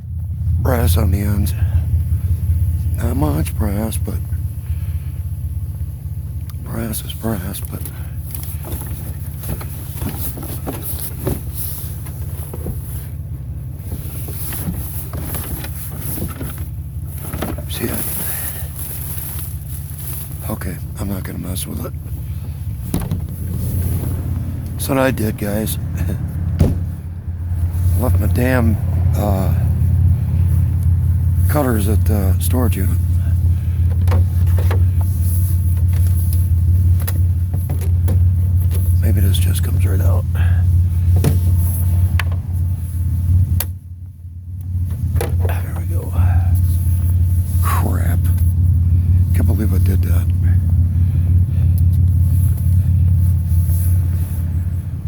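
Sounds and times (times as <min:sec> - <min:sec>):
low motor hum: 0:00.0 - 0:55.0
steady low rumble: 0:00.0 - 0:55.0
items being handled: 0:08.2 - 0:13.2, 0:13.8 - 0:20.4.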